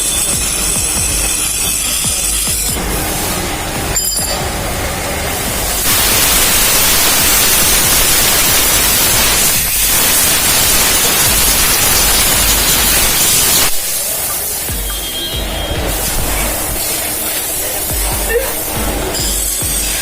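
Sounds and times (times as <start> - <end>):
abrasive grinding brake disc: 0.0 - 4.7.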